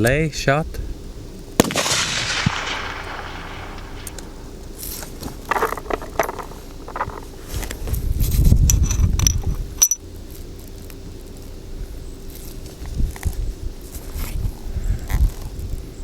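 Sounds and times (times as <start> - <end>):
rifle shot echo: 1.6 - 4.8
low rumble: 1.6 - 7.4
ringing metal clink: 8.7 - 10.0.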